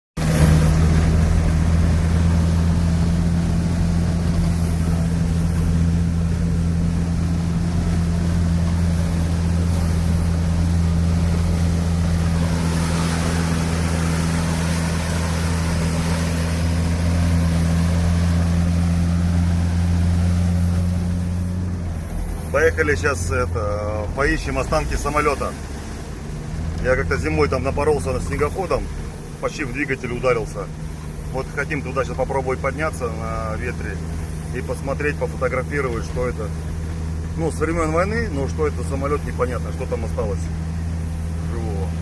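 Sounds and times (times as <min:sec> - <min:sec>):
vehicle engine running steadily: 0:00.2 - 0:42.0.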